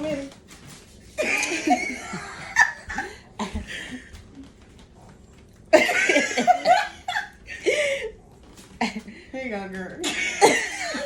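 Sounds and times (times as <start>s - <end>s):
person laughing: 1.2s - 4.1s.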